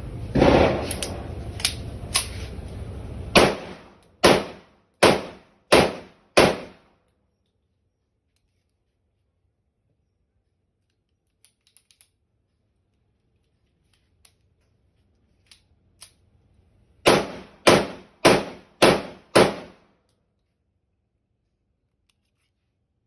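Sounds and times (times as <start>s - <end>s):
pistol shots: 0.3s - 1.2s, 3.3s - 6.8s, 17.0s - 19.8s.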